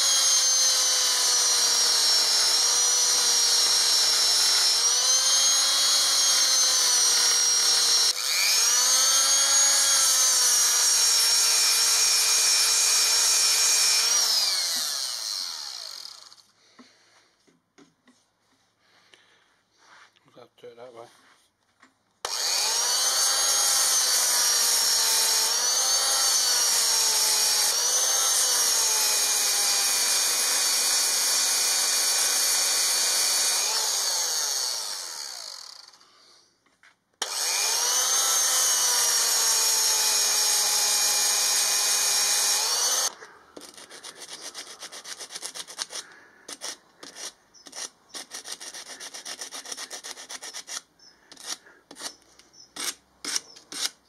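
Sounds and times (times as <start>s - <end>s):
electric grinder grinding weld: 0.0s - 16.4s, 22.3s - 36.0s, 37.2s - 50.4s
irregular rasping strokes: 42.2s - 54.0s.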